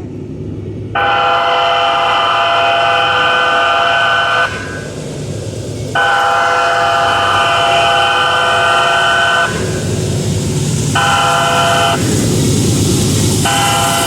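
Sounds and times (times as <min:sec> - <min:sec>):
low rumble: 0:00.0 - 0:14.0
train horn multi-tone chord: 0:01.0 - 0:04.9, 0:06.0 - 0:10.1, 0:10.9 - 0:12.3, 0:13.4 - 0:14.0.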